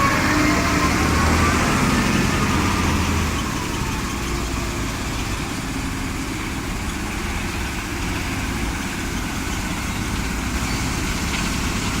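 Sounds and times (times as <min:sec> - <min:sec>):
heavy machinery drone: 0:00.0 - 0:12.0.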